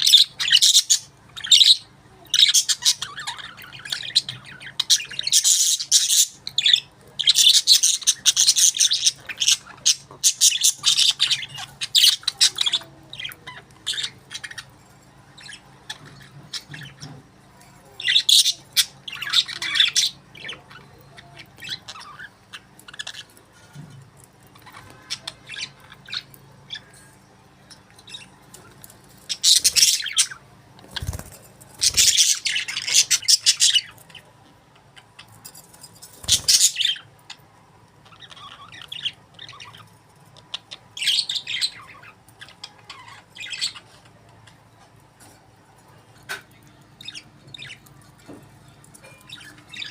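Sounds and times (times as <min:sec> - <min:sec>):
budgerigars chirping: 0:00.0 - 0:14.7, 0:29.2 - 0:34.3, 0:36.2 - 0:37.4.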